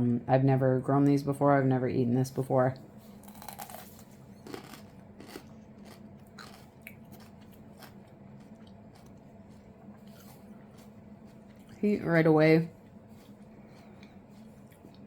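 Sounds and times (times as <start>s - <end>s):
faint crunches and mouth clicks: 3.2s - 11.8s
person chewing pepper: 3.2s - 11.8s, 12.8s - 15.0s.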